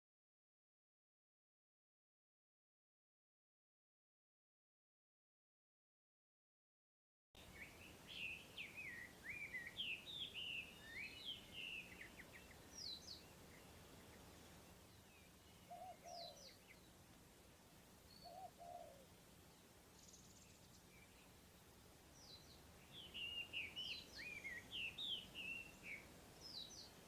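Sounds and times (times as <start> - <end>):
faint birdsong: 7.4 - 27.0.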